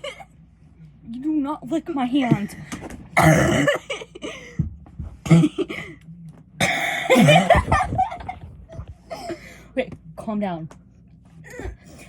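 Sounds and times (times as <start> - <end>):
person coughing: 3.2 - 4.6, 5.2 - 6.0, 6.6 - 7.9.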